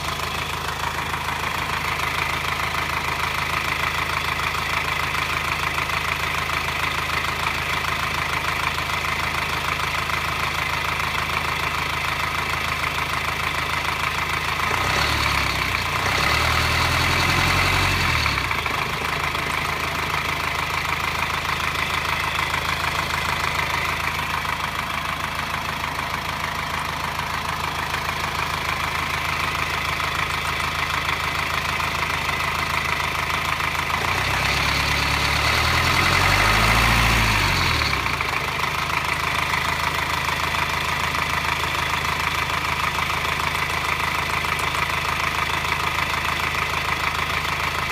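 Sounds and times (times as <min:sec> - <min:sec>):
diesel engine idling and revving: 0:00.0 - 0:47.9.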